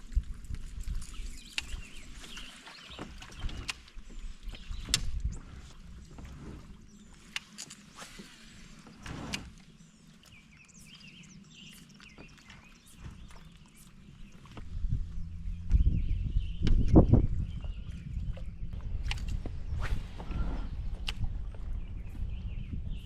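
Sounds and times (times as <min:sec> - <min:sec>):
kayak gear clicks and knocks: 0:01.4 - 0:05.4, 0:07.2 - 0:08.0, 0:18.8 - 0:19.6.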